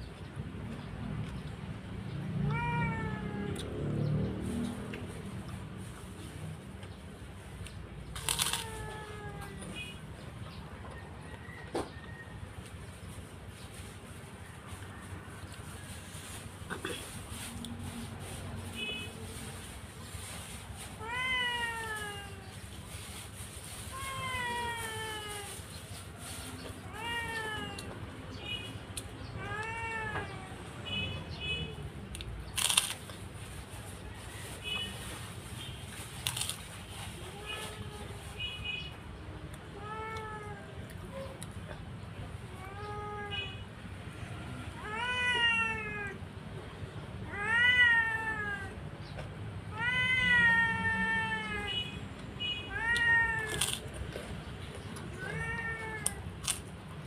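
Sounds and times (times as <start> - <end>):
cat meowing: 2.4 - 4.0, 8.2 - 9.9, 21.0 - 22.6, 23.9 - 25.7, 26.8 - 28.0, 29.4 - 30.6, 39.8 - 41.4, 42.5 - 43.5, 44.6 - 46.2, 47.2 - 48.8, 49.7 - 51.9, 52.6 - 53.9, 55.1 - 56.2.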